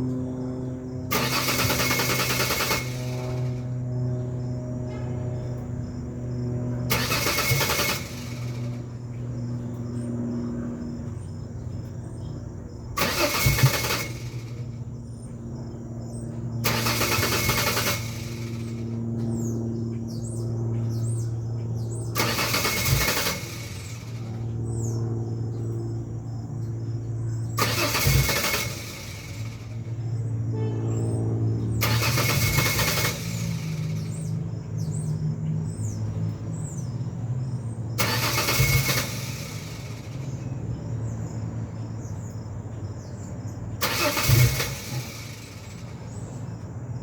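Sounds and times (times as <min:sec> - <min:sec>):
loud noisy burst: 0:01.1 - 0:03.3
engine cranking without starting: 0:01.1 - 0:03.8, 0:06.8 - 0:09.0, 0:13.0 - 0:14.8, 0:16.6 - 0:19.0, 0:22.1 - 0:24.5, 0:27.6 - 0:29.9, 0:31.8 - 0:34.4, 0:38.0 - 0:40.5, 0:43.8 - 0:46.4.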